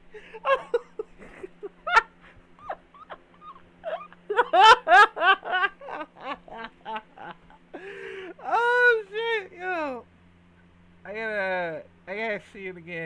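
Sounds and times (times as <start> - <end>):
person laughing hard: 0.0 - 10.0.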